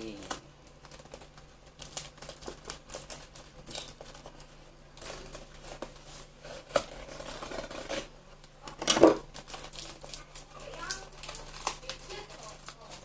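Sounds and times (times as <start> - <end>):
packaging rustling: 0.0 - 13.0
tearing noises: 9.2 - 13.0.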